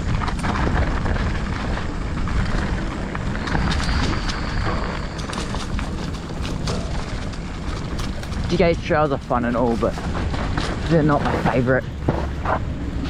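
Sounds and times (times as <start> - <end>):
bike chain and frame clattering: 0.0 - 13.0
high whine: 0.0 - 13.0
tyres rolling over dirt: 0.0 - 13.0
wind buffeting microphone: 0.0 - 13.0.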